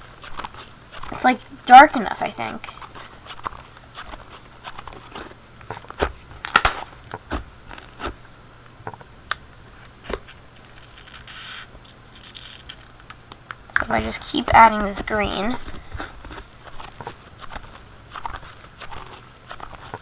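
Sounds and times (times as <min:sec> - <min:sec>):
slime squishing by hand: 0:00.0 - 0:08.2, 0:09.7 - 0:20.0
soft high crackling: 0:09.7 - 0:20.0.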